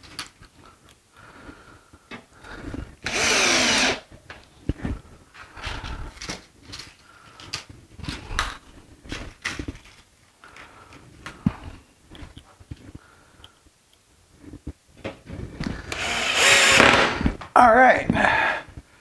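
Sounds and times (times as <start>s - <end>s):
power tool burst: 3.0s - 4.0s, 15.9s - 17.2s.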